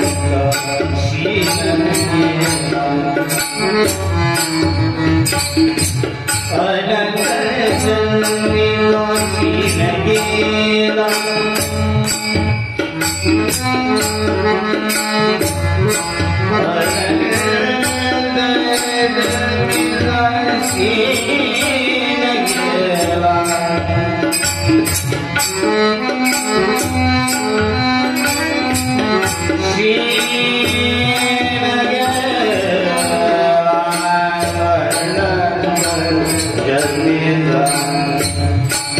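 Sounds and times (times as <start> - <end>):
man singing: 0.0 - 4.7, 5.7 - 12.3, 16.0 - 24.6, 27.4 - 38.9
held accompanying notes: 0.0 - 38.9.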